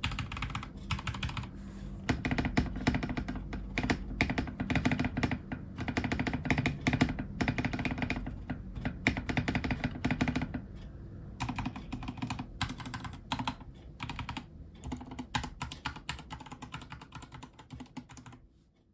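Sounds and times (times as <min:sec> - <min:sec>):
typing on mechanical keyboard: 0:00.0 - 0:10.8, 0:11.4 - 0:18.4.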